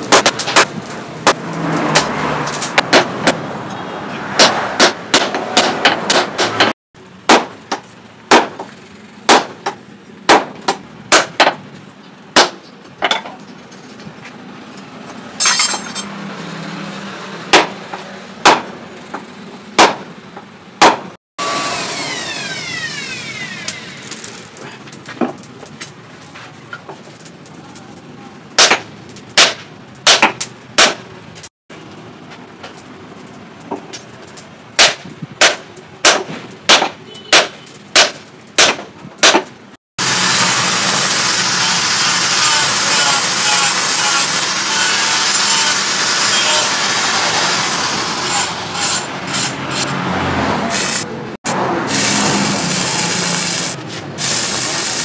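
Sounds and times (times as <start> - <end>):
hammer striking steel: 0.0 - 3.4, 4.4 - 8.7, 9.3 - 11.6, 17.5 - 18.8, 19.8 - 20.1, 20.8 - 21.2, 28.6 - 31.0, 34.8 - 46.8.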